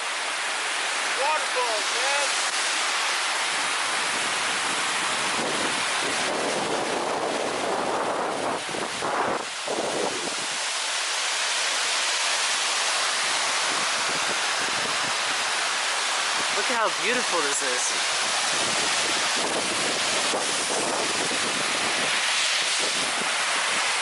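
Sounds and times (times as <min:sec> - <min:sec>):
waterfall roaring over rocks: 0:00.0 - 0:24.0
wind noise on microphone: 0:03.9 - 0:10.6, 0:13.6 - 0:15.4, 0:18.0 - 0:24.0.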